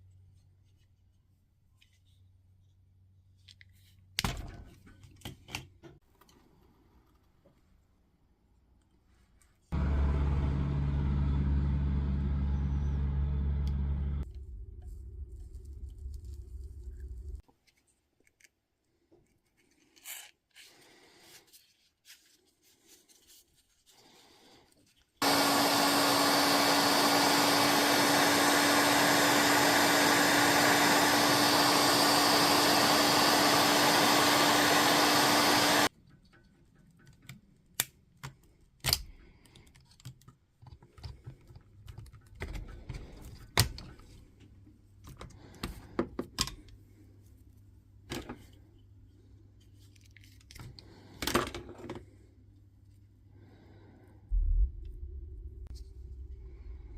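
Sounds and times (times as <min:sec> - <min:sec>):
electric motor humming: 0:09.8 - 0:14.2, 0:25.2 - 0:35.9.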